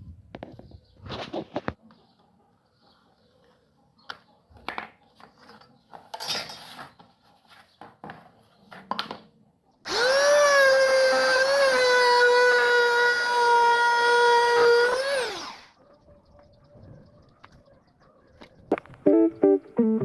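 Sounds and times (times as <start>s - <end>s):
power tool whining: 9.9s - 15.7s.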